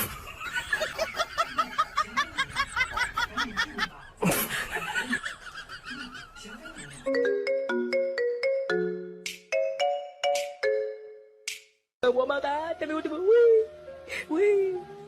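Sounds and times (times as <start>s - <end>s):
plinking ringtone melody: 7.1s - 11.4s.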